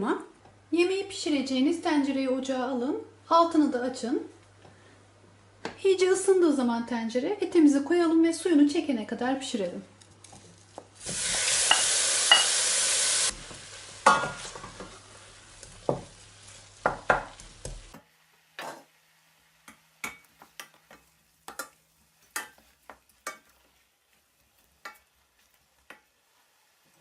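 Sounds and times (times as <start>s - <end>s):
meat sizzling in a pot: 10.2s - 27.0s.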